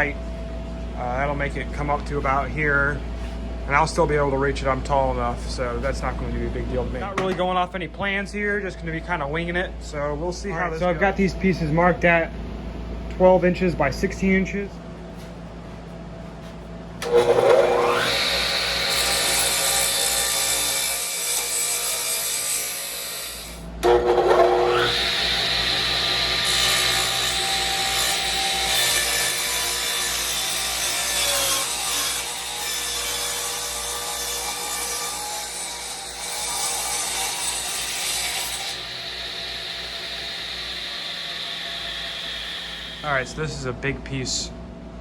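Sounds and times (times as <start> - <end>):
electric saw cutting board: 17.0 - 43.2.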